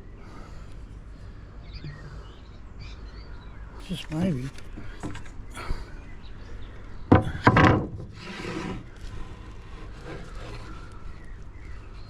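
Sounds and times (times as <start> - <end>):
wooden knocks: 7.1 - 8.1
wood sliding on wood: 7.1 - 11.3.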